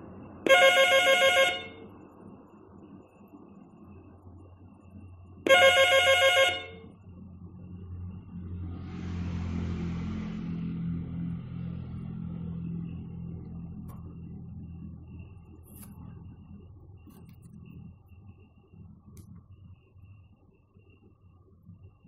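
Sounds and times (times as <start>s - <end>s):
telephone ringing: 0.5s - 1.8s, 5.5s - 6.8s.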